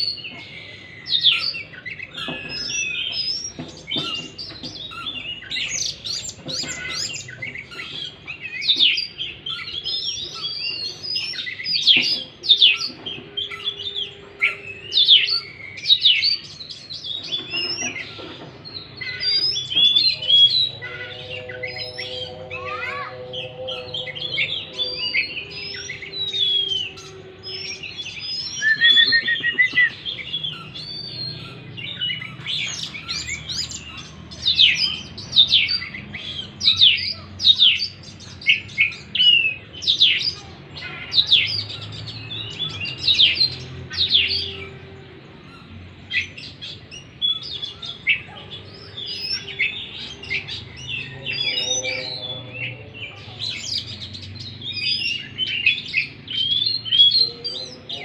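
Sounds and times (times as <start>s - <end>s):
bird singing whistles: 19.1s - 33.8s.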